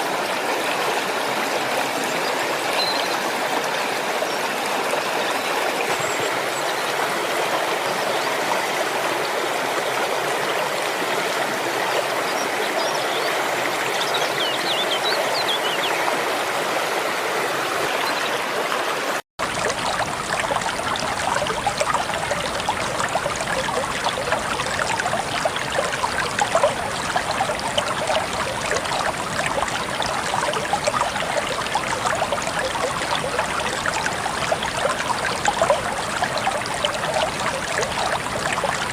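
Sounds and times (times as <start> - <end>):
waterfall rushing and splashing: 0.0 - 38.9.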